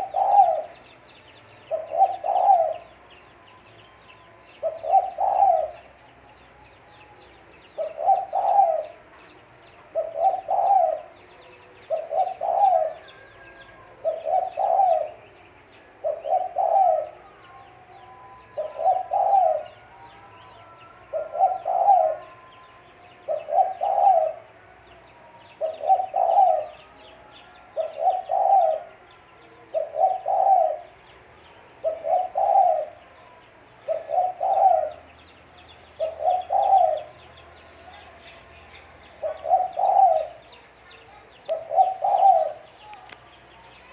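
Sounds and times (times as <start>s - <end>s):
dove cooing: 0.0s - 0.9s, 1.7s - 3.0s, 4.6s - 6.0s, 7.7s - 9.1s, 9.9s - 20.2s, 21.0s - 24.6s, 25.5s - 31.0s, 31.8s - 33.2s, 33.8s - 35.2s, 35.9s - 37.4s, 39.0s - 43.2s.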